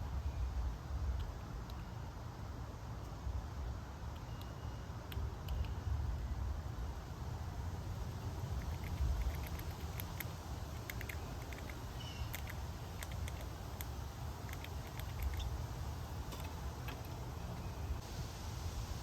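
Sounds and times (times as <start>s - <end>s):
squirrel gnawing food: 8.0s - 17.2s.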